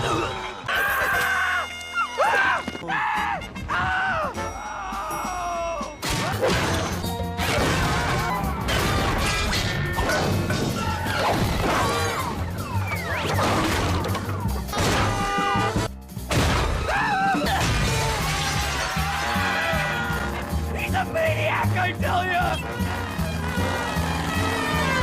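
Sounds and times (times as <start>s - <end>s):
music: 0.0s - 25.0s
cartoon crashes and smashes: 6.0s - 12.5s, 13.1s - 15.6s, 16.3s - 20.0s.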